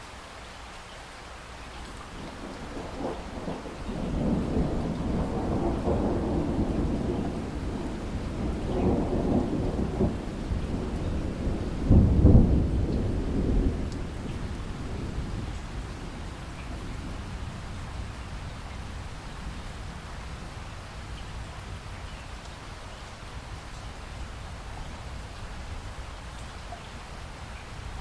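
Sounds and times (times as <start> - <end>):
steady rain: 0.0 - 28.0
thunder rumbling: 2.1 - 22.0.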